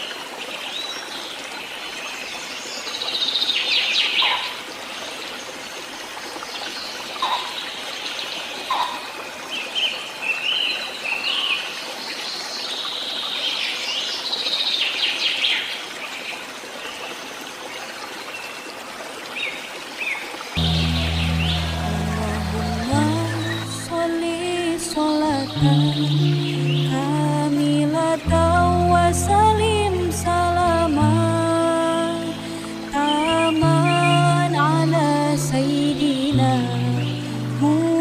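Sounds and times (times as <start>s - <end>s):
stream trickling: 0.0s - 38.0s
birds chirping and singing: 20.6s - 24.2s
music: 20.6s - 38.0s.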